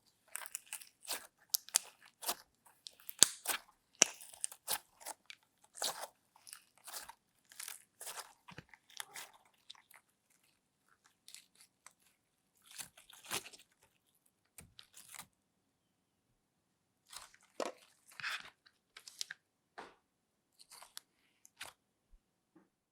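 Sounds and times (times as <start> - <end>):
slime crackling when squeezed: 3.0 - 5.2.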